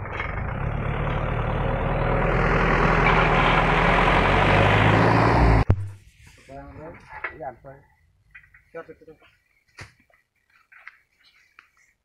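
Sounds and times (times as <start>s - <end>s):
heavy vehicle engine humming: 0.0s - 5.7s.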